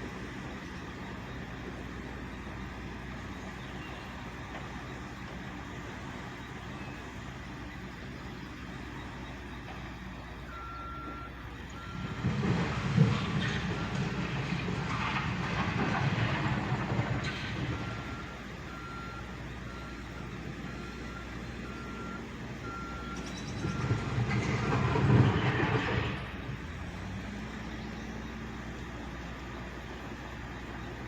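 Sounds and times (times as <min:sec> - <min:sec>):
diesel engine working: 0:00.0 - 0:31.0
back-up alarm beeping: 0:10.1 - 0:12.3, 0:17.7 - 0:24.2.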